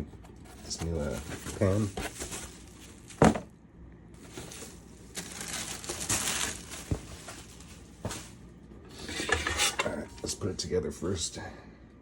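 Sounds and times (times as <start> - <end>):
packaging rustling: 0.3 - 3.4, 4.2 - 8.5.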